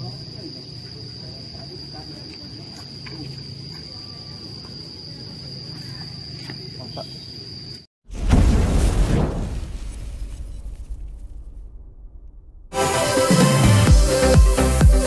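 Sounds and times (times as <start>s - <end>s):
insect trilling: 0.0s - 7.9s.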